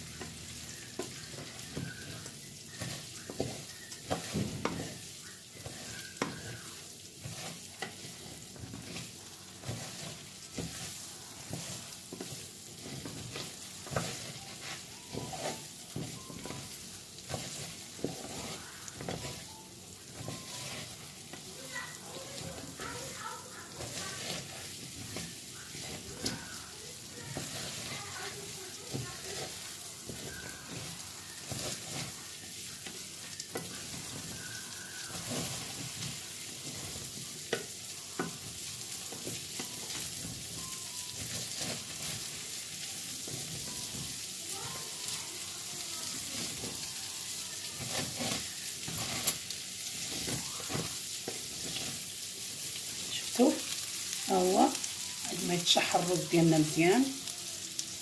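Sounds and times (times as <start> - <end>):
wooden spoon scraping a pot: 0.0 - 57.2
rice sizzling in oil: 0.0 - 58.0.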